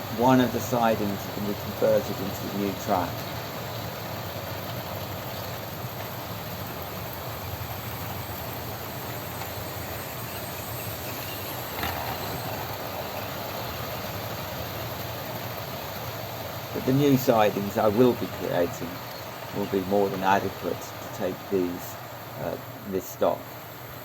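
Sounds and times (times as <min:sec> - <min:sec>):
model train rumbling on track: 0:00.0 - 0:24.0.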